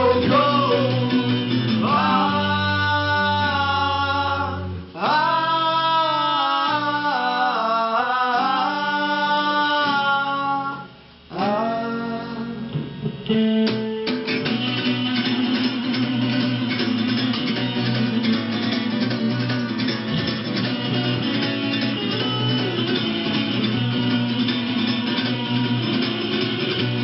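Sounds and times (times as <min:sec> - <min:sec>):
plucked guitar notes: 0:00.0 - 0:05.2, 0:11.3 - 0:27.0
live rock guitars: 0:00.0 - 0:07.6, 0:08.3 - 0:27.0
wordless sung notes: 0:00.0 - 0:27.0.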